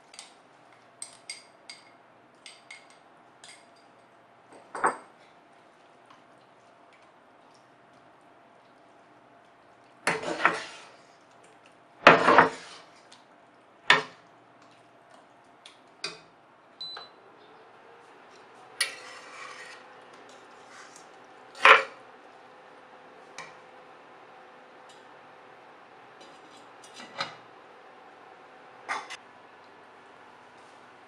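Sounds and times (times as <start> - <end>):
metal cookware clanking: 18.8 - 19.9, 21.6 - 22.0, 28.9 - 29.2.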